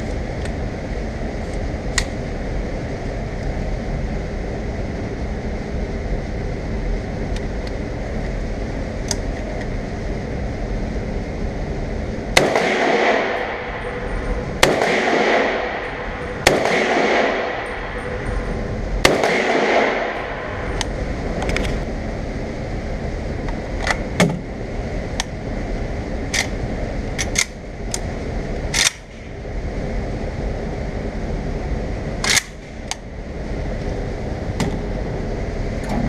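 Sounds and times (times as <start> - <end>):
steady low rumble: 0.0 - 36.0
rifle shots echoing: 12.4 - 14.0, 14.6 - 18.2, 19.0 - 20.7.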